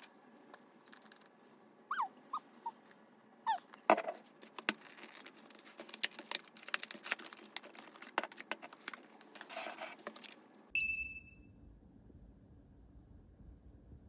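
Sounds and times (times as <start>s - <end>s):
bright bell-like ding: 10.8s - 11.5s.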